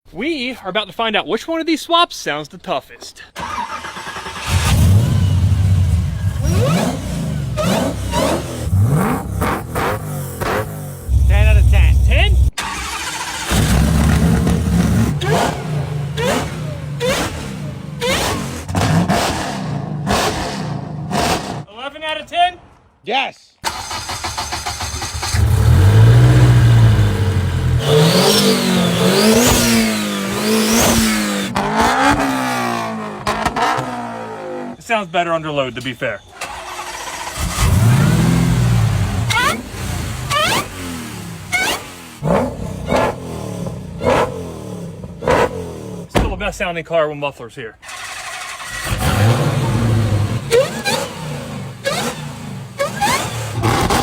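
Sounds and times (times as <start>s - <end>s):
car engine starting: 3.3s - 21.7s, 23.6s - 35.0s, 35.6s - 46.7s, 47.8s - 54.0s
car engine rumbling and revving: 3.4s - 21.7s, 23.7s - 34.9s, 36.3s - 46.6s, 47.8s - 54.0s
high engine whine: 10.8s - 12.9s.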